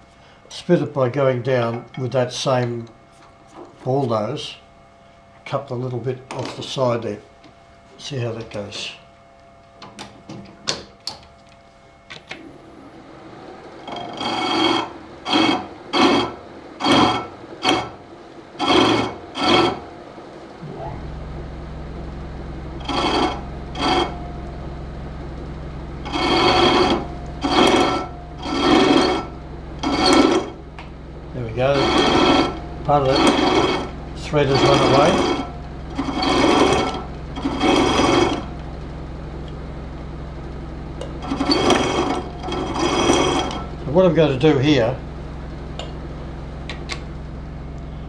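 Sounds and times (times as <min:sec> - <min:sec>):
low machine hum: 0:12.0 - 0:48.0
cutter scraping metal: 0:13.0 - 0:19.9, 0:20.6 - 0:46.8.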